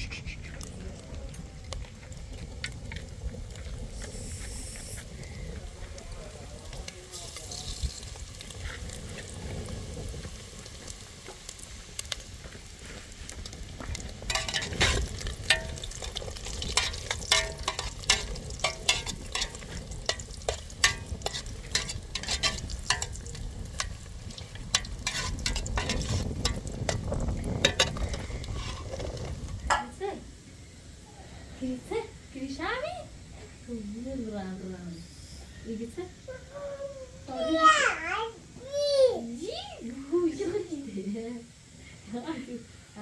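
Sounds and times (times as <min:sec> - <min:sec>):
utensils clinking in metal pot: 0:14.2 - 0:30.0.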